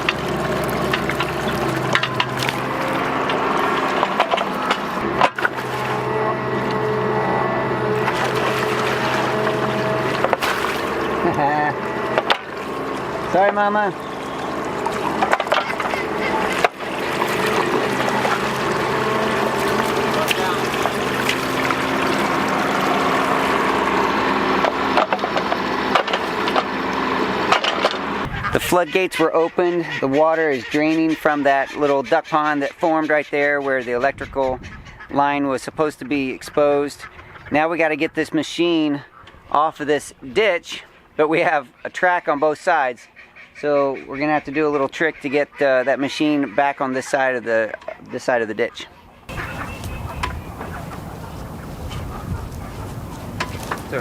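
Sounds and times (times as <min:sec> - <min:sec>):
clicks and knocks of excavator: 0:00.0 - 0:06.8, 0:08.0 - 0:10.9, 0:12.1 - 0:13.6, 0:14.8 - 0:18.5, 0:24.5 - 0:28.3
bucket digging dirt: 0:00.0 - 0:28.6, 0:49.3 - 0:54.0
diesel engine running: 0:00.0 - 0:28.7, 0:49.2 - 0:54.0.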